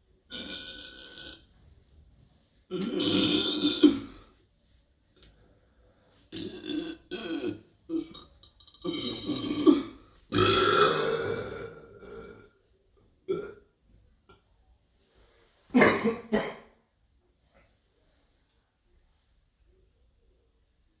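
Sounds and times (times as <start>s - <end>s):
person burping: 0.3s - 1.5s, 2.7s - 4.3s, 6.3s - 12.6s, 13.3s - 13.7s, 15.8s - 16.8s.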